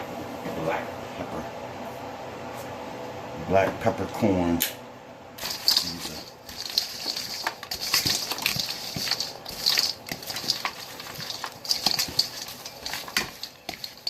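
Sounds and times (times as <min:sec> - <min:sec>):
salad leaves crunching and rustling: 0:05.4 - 0:14.0.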